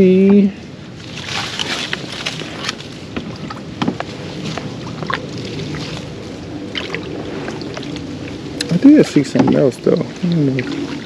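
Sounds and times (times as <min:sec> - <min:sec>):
light water noise: 0:00.0 - 0:11.0
twigs brushing against kayak: 0:01.0 - 0:08.5.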